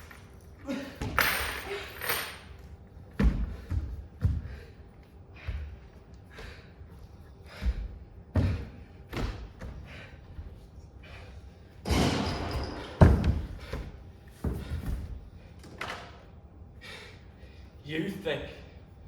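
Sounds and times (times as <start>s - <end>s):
loud slam: 11.8s - 13.4s.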